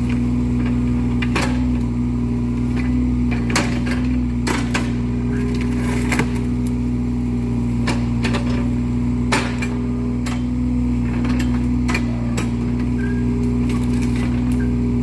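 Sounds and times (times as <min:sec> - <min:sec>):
excavator engine running: 0:00.0 - 0:15.0
sharp knocks of excavator bucket: 0:09.2 - 0:10.6.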